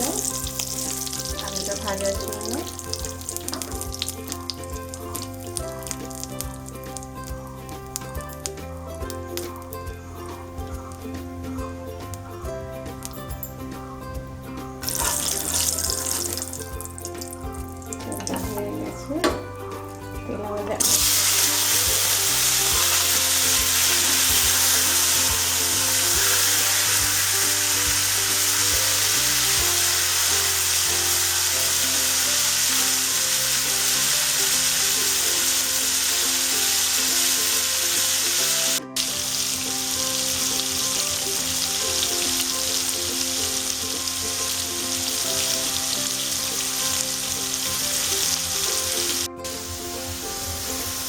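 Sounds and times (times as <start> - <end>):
potatoes sizzling in hot oil: 0.0 - 9.9, 14.8 - 19.0, 19.8 - 51.0
soft background music: 0.0 - 51.0.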